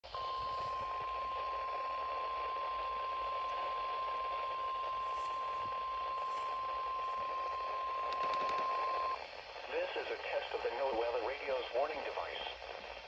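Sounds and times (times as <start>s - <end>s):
steady high alarm tone: 0.1s - 9.2s
radio hiss: 0.1s - 13.0s.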